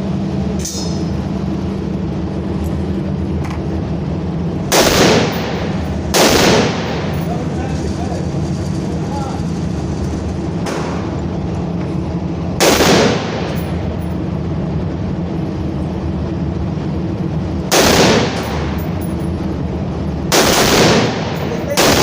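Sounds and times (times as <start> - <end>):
low background rumble: 0.0 - 22.0
gunshots with echo: 4.7 - 7.4, 12.6 - 13.8, 17.7 - 18.8, 20.3 - 22.0.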